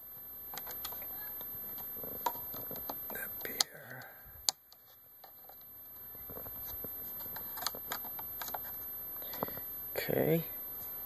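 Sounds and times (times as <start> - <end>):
plastic clicks: 7.2 - 8.7.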